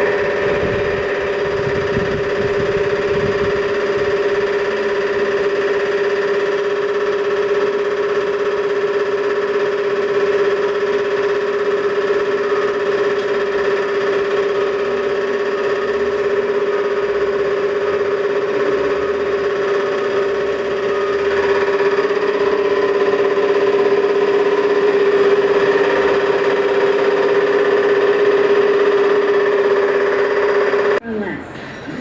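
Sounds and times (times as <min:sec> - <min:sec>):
high-pitched motor running: 0:00.0 - 0:31.0.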